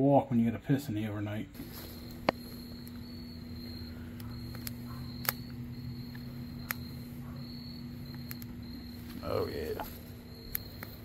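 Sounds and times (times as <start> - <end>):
crickets trilling: 0.6 - 11.0
low hum: 1.5 - 11.0
sharp click: 4.2 - 6.9.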